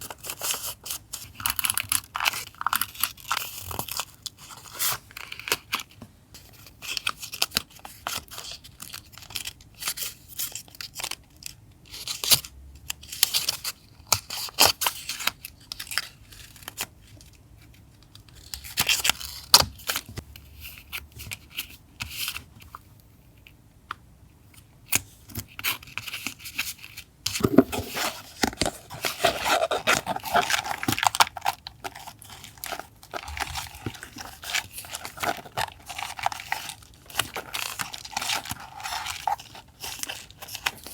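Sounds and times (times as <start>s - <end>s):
paper crinkling and tearing: 27.4s - 40.9s.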